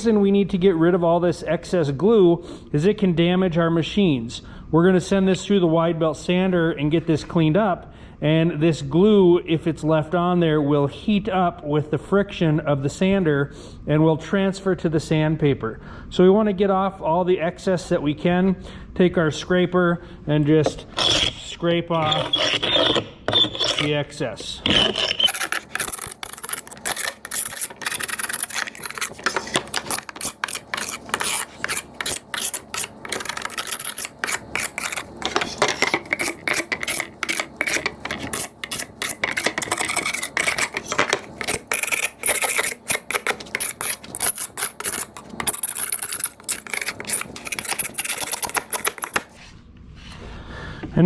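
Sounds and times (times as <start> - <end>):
scraper rasping on wood: 22.0 - 24.0, 24.6 - 49.4.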